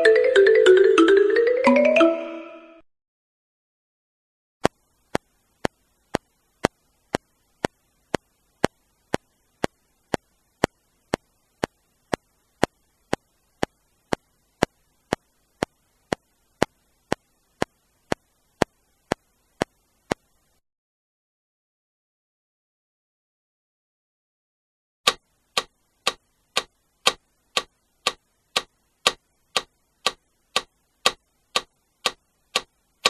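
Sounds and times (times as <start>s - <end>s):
clock ticking: 25.1s - 32.7s.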